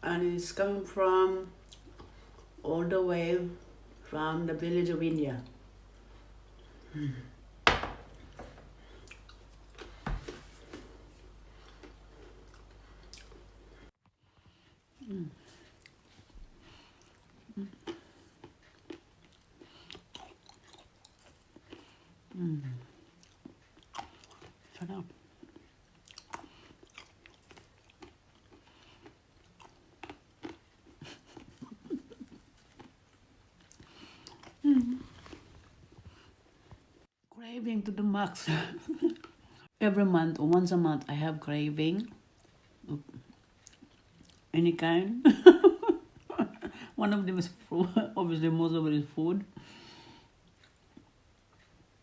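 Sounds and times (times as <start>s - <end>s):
faint chewing: 1.4s - 2.6s, 8.7s - 37.0s, 42.0s - 44.5s, 49.8s - 52.0s.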